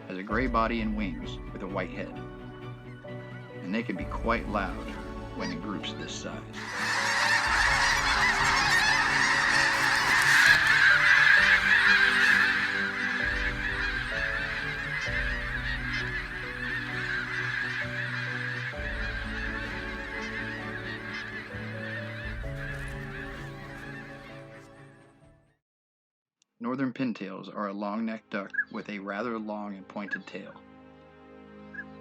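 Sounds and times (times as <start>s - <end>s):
geese honking: 3.7s - 24.8s.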